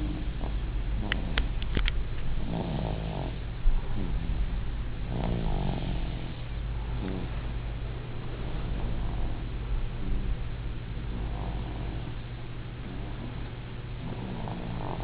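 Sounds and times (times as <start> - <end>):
steady low hum: 0.0 - 15.0
baby snoring: 2.4 - 4.3, 5.1 - 6.4, 7.0 - 7.4, 11.2 - 12.2, 14.0 - 15.0.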